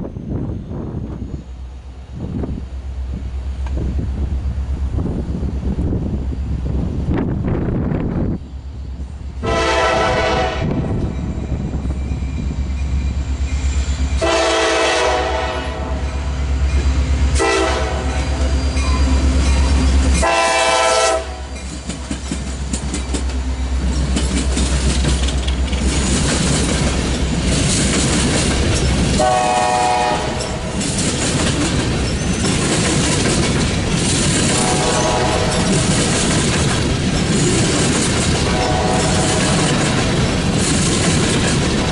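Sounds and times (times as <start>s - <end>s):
diesel locomotive engines rumbling: 0.0s - 41.9s
train wheels clacking on rails: 8.9s - 41.9s
train horn: 9.4s - 11.2s, 14.2s - 16.3s, 17.4s - 19.1s, 20.1s - 21.6s, 29.2s - 30.8s, 34.4s - 35.9s, 38.4s - 39.6s.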